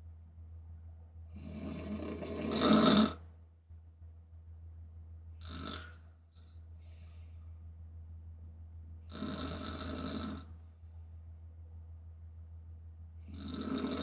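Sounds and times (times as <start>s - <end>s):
woman snoring: 1.4s - 3.2s, 5.4s - 5.9s, 9.1s - 10.5s, 13.3s - 14.0s.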